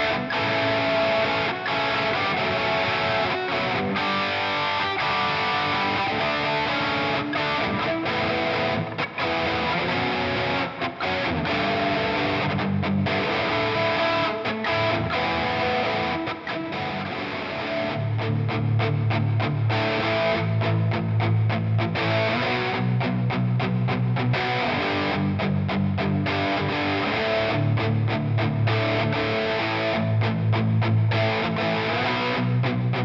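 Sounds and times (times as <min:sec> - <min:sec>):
distorted electric guitar: 0:00.0 - 0:33.0.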